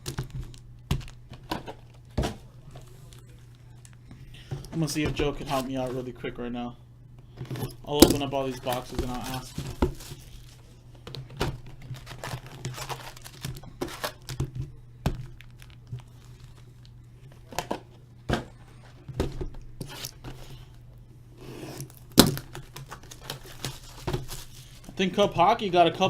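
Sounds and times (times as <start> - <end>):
plastic wrap and cardboard tearing: 8.0 - 10.7, 11.6 - 14.4, 15.2 - 16.7, 21.8 - 24.8.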